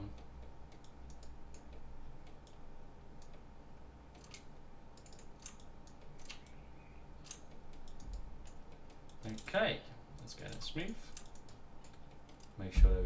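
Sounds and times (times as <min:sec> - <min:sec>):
faint steady hum: 0:00.0 - 0:13.0
mouse and keyboard clicks: 0:04.1 - 0:06.6.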